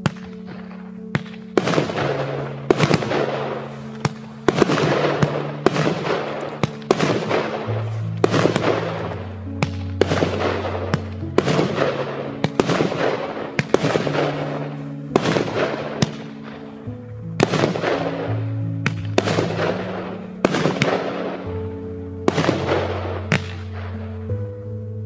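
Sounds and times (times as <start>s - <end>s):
fireworks bangs and crackling: 0.0s - 24.3s
background music low notes: 0.0s - 25.0s.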